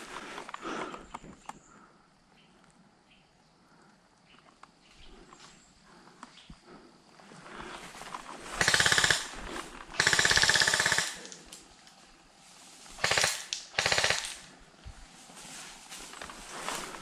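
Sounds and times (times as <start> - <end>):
airsoft gun firing full-auto: 8.6 - 9.4, 10.0 - 11.3, 13.0 - 14.5.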